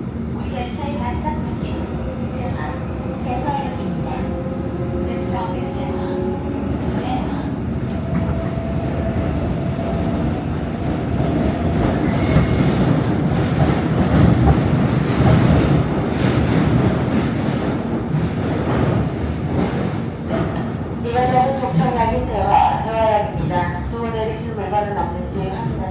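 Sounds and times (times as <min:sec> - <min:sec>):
train wheels rumbling on track: 0:00.0 - 0:24.0.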